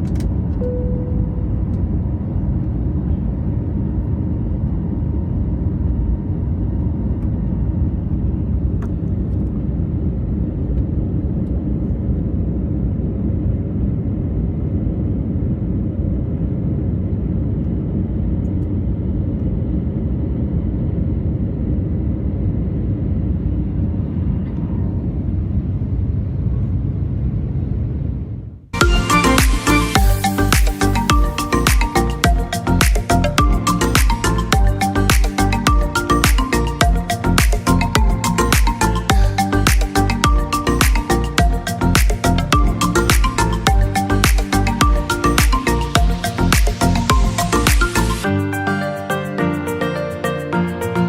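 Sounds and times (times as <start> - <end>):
airliner cabin engine rumble: 0.0 - 28.6.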